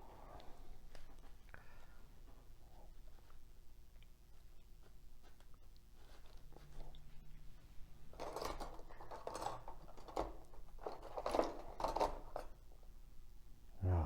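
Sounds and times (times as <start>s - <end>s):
rummaging through tools: 8.0s - 12.7s.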